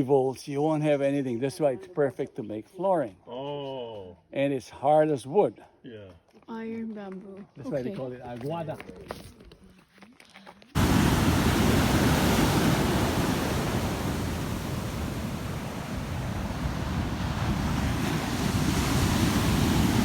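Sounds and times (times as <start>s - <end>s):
surf rushing: 10.8s - 20.0s
wind buffeting microphone: 10.8s - 20.0s.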